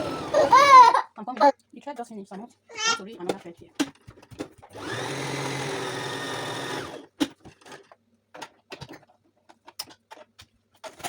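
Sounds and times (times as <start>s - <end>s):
electric sewing machine running: 0.0s - 0.9s, 4.7s - 7.1s.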